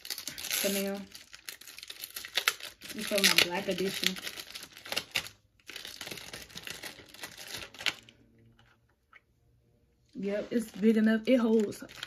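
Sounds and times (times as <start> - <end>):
plastic packaging crinkling: 0.0 - 8.7, 10.4 - 12.0.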